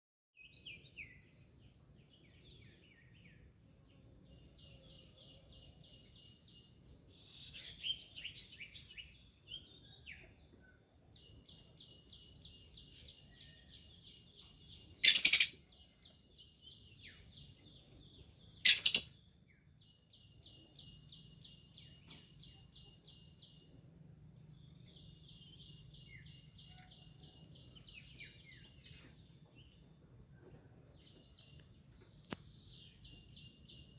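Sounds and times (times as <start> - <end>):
bird chirps: 0.4 - 33.9
bird trilling: 15.0 - 15.6, 18.7 - 19.2.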